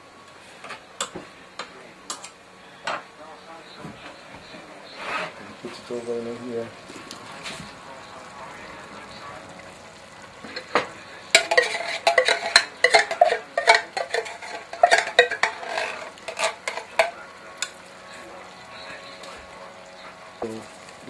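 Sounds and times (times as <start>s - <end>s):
metal spoon clanking in a pot: 10.5s - 17.8s.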